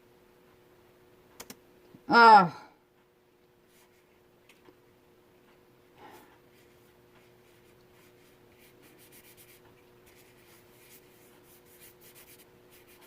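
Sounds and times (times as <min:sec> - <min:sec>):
faint steady hum: 0:00.0 - 0:13.0
laptop keyboard typing clicks: 0:01.4 - 0:01.6.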